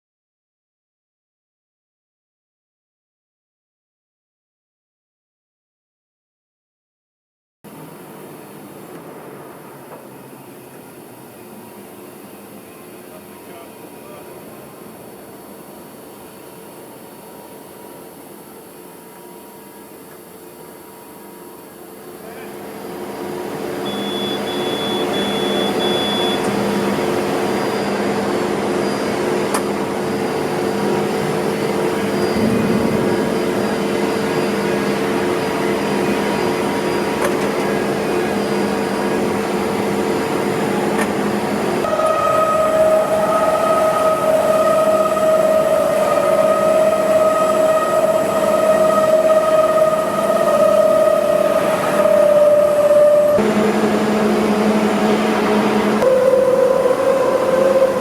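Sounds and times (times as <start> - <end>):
high-pitched steady whine: 7.8 - 58.0
machine motor hum: 37.6 - 58.0.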